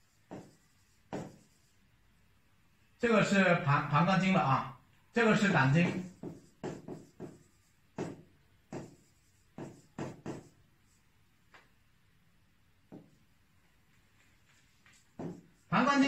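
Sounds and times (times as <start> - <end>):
pen tapping on drawing surface: 0.2 - 1.5, 5.8 - 7.4, 8.0 - 9.0, 9.6 - 10.6, 12.9 - 13.2, 14.9 - 15.5.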